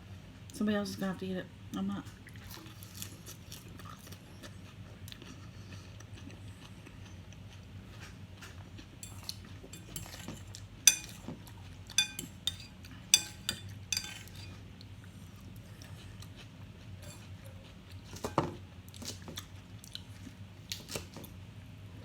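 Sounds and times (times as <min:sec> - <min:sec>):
utensil clinking against dishware: 0:09.0 - 0:11.2, 0:12.0 - 0:14.5, 0:17.0 - 0:17.2.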